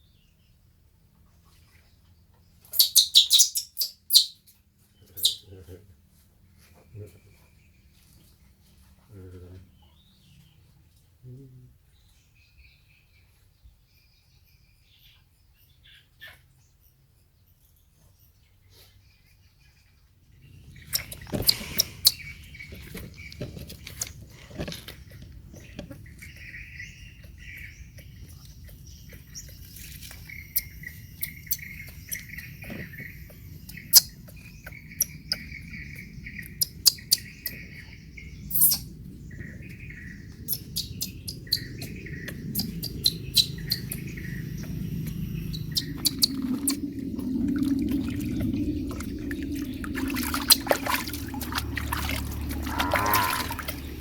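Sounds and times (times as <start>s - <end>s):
baby monkey chirping squeaks: 2.7s - 4.4s, 5.2s - 5.5s, 20.8s - 22.8s, 27.5s - 35.6s, 36.4s - 37.8s, 38.5s - 38.9s, 40.4s - 46.8s.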